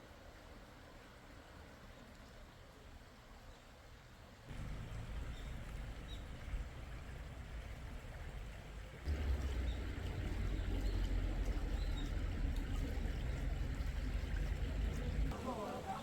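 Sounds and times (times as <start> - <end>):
stream flowing: 0.0 - 16.0
low rumble: 4.5 - 15.4.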